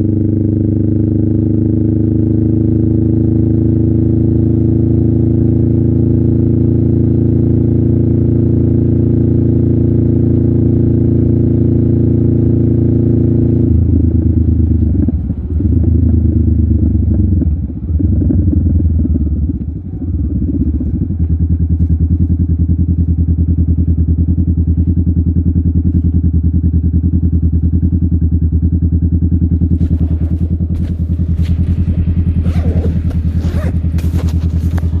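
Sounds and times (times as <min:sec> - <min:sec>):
motorcycle engine revving and idling: 0:00.0 - 0:35.0
clicks and scrapes: 0:32.6 - 0:35.0.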